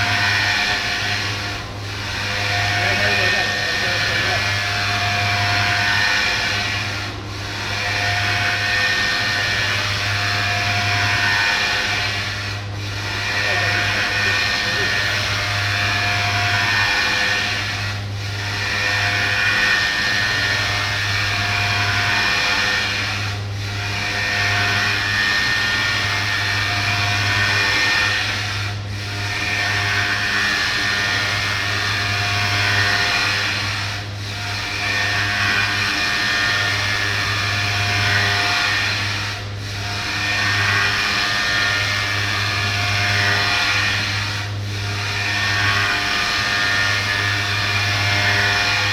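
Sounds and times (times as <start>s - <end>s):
dense cutting noise: 0.0s - 17.9s.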